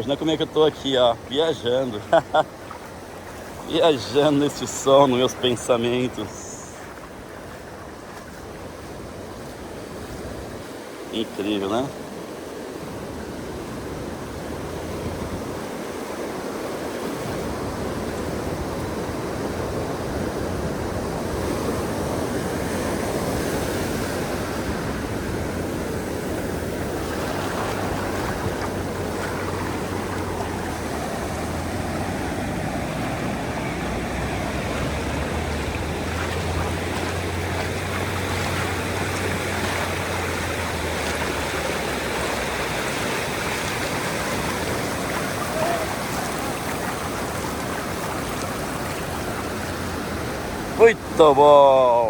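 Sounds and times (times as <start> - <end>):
ocean waves breaking on sand: 0.0 - 52.0
wind on microphone: 12.8 - 50.8.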